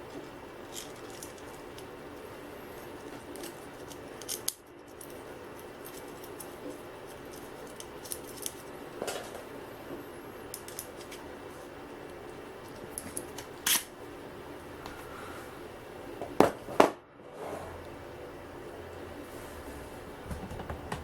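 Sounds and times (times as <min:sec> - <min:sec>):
steady low hum: 0:00.0 - 0:21.0
metal parts clicking and tapping: 0:03.0 - 0:09.4, 0:10.5 - 0:11.2.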